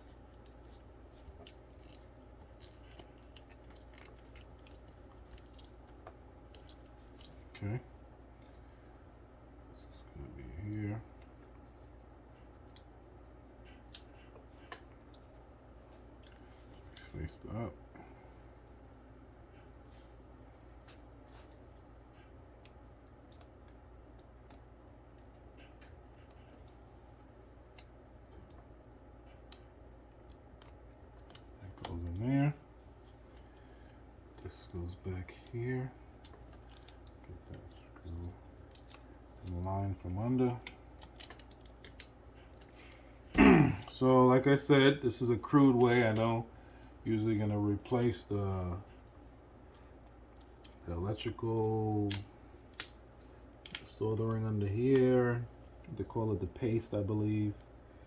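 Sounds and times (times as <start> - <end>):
steady low hum: 0.0 - 58.0
small clicks of plastic parts: 0.3 - 7.4, 12.4 - 15.4, 20.8 - 28.7, 29.3 - 32.3, 36.2 - 43.0, 45.6 - 47.2, 48.9 - 50.8, 51.5 - 55.0.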